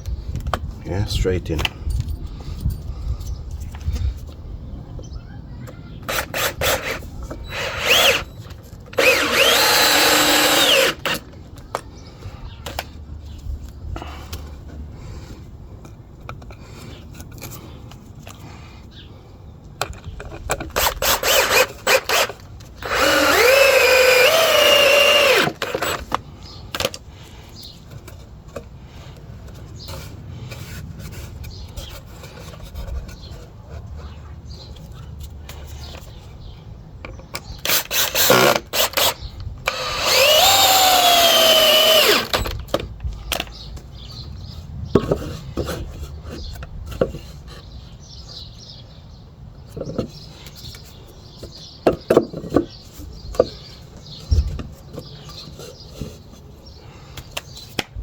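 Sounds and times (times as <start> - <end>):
power drill driving screws: 6.1 - 11.2, 20.8 - 26.2, 37.6 - 42.6
boards and screws knocking: 19.8 - 27.0, 37.0 - 47.6, 49.6 - 56.4.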